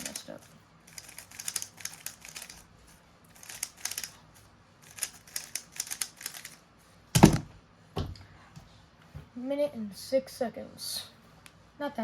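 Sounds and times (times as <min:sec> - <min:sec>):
loud thump: 0:07.2 - 0:07.5.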